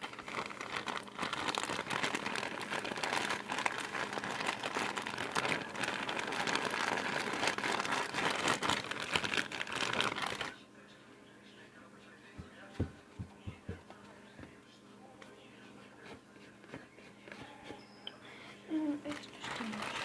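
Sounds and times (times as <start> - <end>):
crinkling and crackling: 0.0 - 10.6, 19.0 - 20.0.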